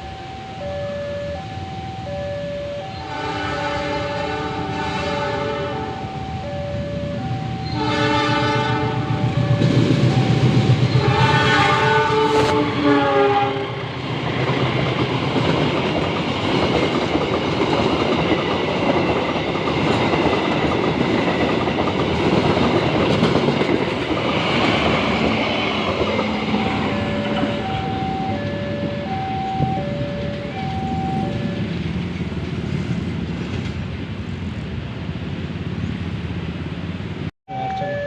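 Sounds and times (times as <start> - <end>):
locomotive horn: 2.4 - 13.8
train wheels on rails: 2.5 - 37.9
two-tone electronic beeping: 9.3 - 11.1, 26.4 - 31.8, 37.5 - 38.0.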